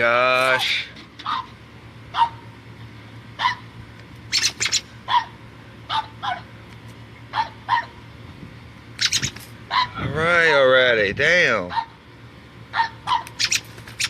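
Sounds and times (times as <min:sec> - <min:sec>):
dog barking in sharp yaps: 0:01.2 - 0:01.5, 0:02.1 - 0:02.4, 0:03.4 - 0:03.6, 0:04.3 - 0:06.5, 0:07.3 - 0:08.0, 0:09.0 - 0:10.0, 0:11.7 - 0:12.0, 0:12.7 - 0:14.0.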